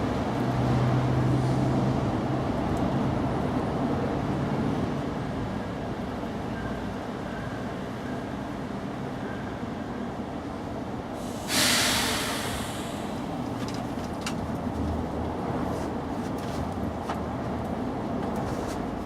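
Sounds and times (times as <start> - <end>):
loud hiss: 11.2 - 13.4.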